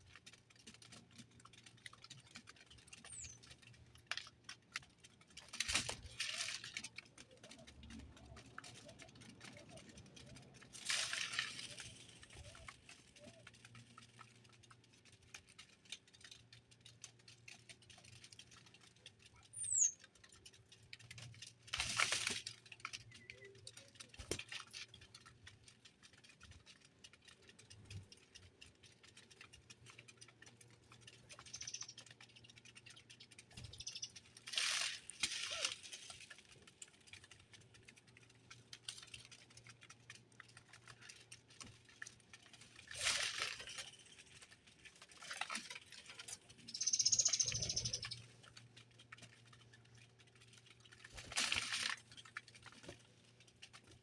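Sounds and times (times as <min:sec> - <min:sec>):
small birds pattering: 0:00.0 - 0:54.0
high falling bird chirp: 0:31.4 - 0:32.0, 0:33.6 - 0:34.2, 0:46.7 - 0:48.2.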